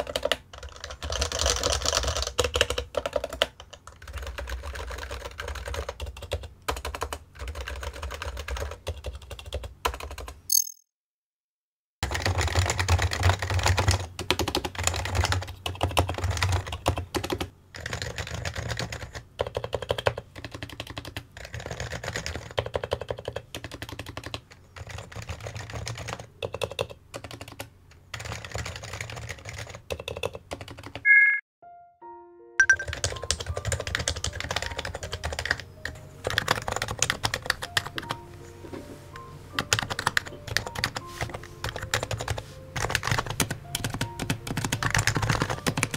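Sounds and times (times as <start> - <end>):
keyboard typing: 0.0 - 10.8, 12.0 - 31.4, 32.6 - 38.2, 39.5 - 45.9
short chime: 31.1 - 31.9
soft background music: 31.6 - 45.9.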